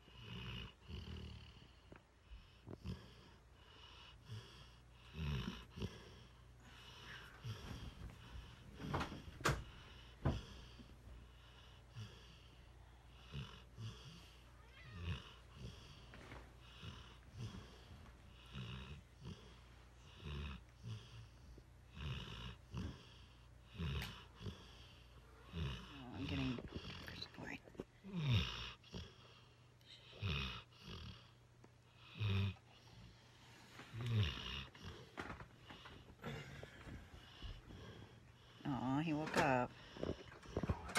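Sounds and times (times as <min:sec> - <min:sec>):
dog snoring: 0:00.0 - 0:40.9
dog grunting: 0:03.9 - 0:10.8, 0:15.0 - 0:29.4, 0:30.0 - 0:31.4, 0:33.8 - 0:40.9.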